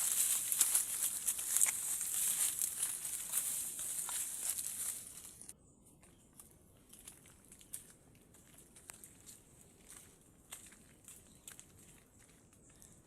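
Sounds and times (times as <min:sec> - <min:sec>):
dense crackling and rustling: 0:00.0 - 0:05.5.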